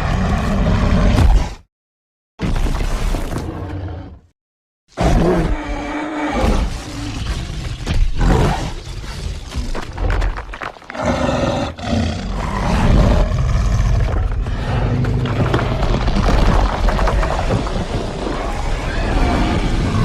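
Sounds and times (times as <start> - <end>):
creature growling deeply: 10.9 - 20.0.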